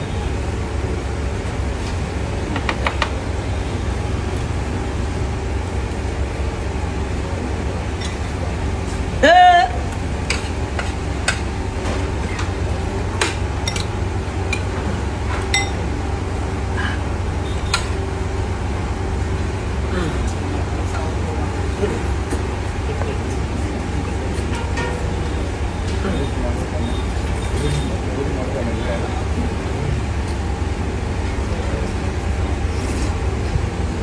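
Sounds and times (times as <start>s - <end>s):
background traffic hum: 0.0s - 34.0s
person shouting: 9.2s - 9.9s.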